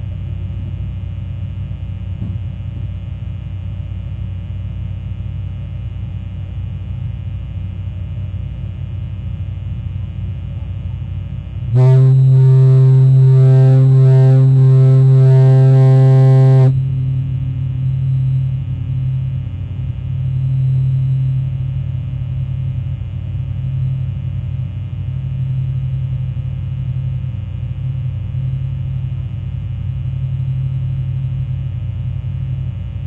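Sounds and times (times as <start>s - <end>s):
steady low hum: 0.0s - 33.0s
foghorn blast: 11.7s - 18.4s.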